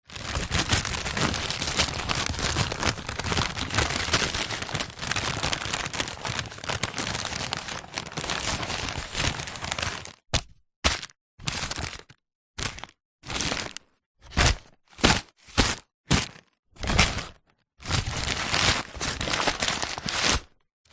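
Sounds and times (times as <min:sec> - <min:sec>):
paper bag crumpling: 0:00.0 - 0:10.2, 0:17.9 - 0:20.4.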